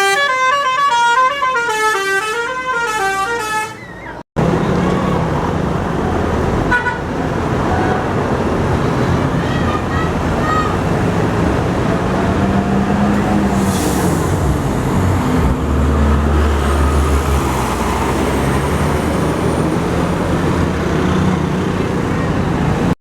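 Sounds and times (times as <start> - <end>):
buses passing: 0.0 - 23.0.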